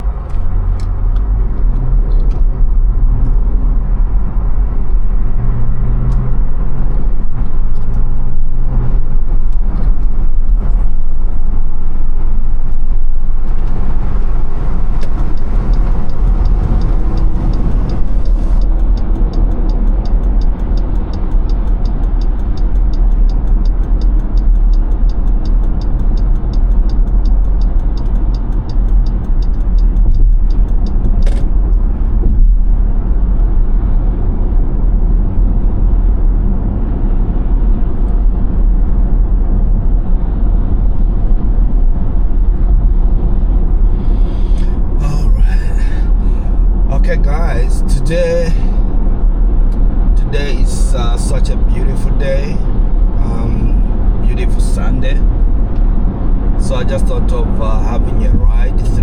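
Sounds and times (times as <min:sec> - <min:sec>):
car cabin road and engine rumble: 0:00.0 - 0:59.0
fast faint ticking: 0:13.5 - 0:32.0.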